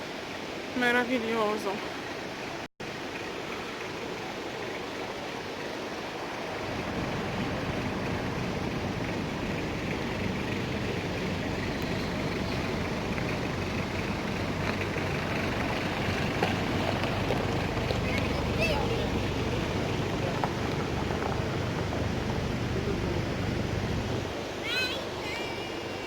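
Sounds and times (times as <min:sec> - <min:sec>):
distant river water: 0:00.0 - 0:26.0
wind rumbling on microphone: 0:05.6 - 0:26.0.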